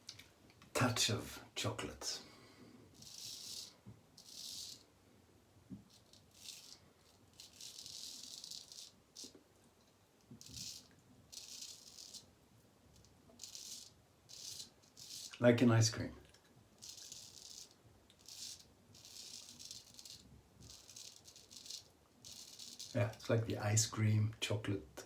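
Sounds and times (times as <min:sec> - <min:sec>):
razor scraping whiskers: 0:16.8 - 0:23.2.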